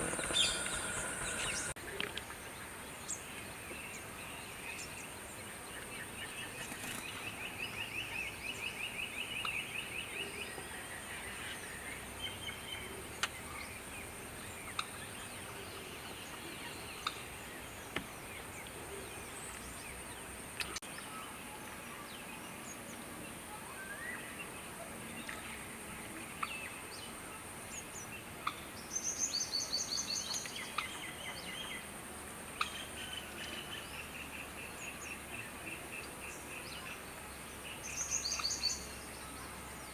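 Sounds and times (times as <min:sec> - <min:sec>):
birds calling in fast series: 0:00.0 - 0:01.8
steady high hiss: 0:00.0 - 0:01.8.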